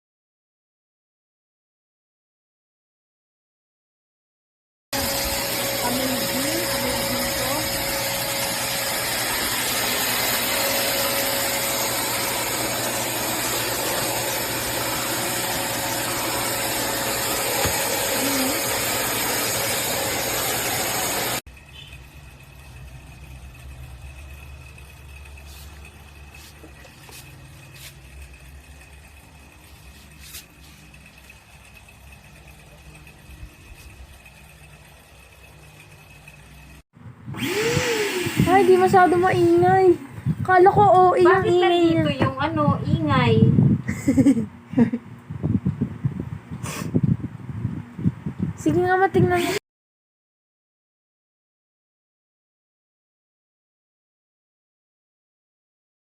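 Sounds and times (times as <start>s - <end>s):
vacuum cleaner running: 5.0s - 21.9s, 23.0s - 34.4s, 37.3s - 42.7s, 48.6s - 49.6s.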